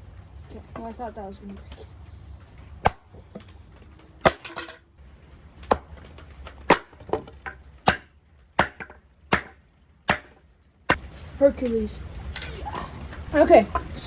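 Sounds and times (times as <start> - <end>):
sharp knocks on wood: 2.8 - 3.4, 5.7 - 6.0, 6.7 - 11.1.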